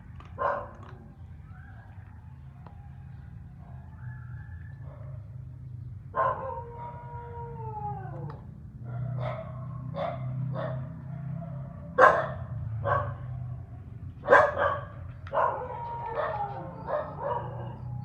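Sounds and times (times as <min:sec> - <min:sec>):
dog barking and yipping: 0:00.3 - 0:00.9, 0:06.2 - 0:07.0, 0:08.9 - 0:13.4, 0:14.2 - 0:18.0.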